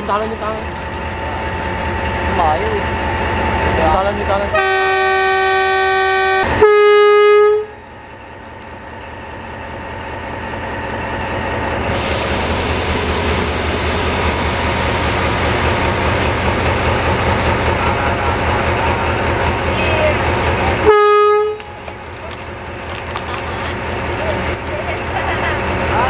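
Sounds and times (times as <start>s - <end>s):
wheels hissing on rail: 0.0s - 6.6s, 8.9s - 21.0s
locomotive rumble passing: 0.0s - 26.0s
locomotive horn: 4.4s - 7.9s, 20.7s - 21.9s.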